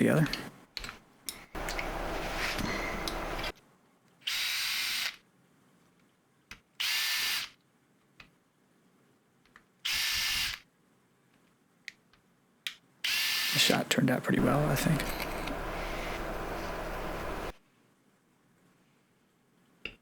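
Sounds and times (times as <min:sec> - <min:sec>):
cordless drill whirring: 0:01.6 - 0:03.5, 0:14.4 - 0:17.5.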